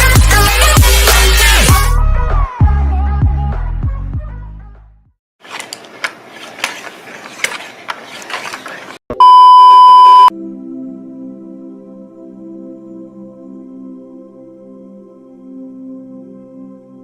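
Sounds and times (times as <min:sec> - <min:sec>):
loud steady beep tone: 0:09.2 - 0:10.3
soft ambient music: 0:10.3 - 0:17.0.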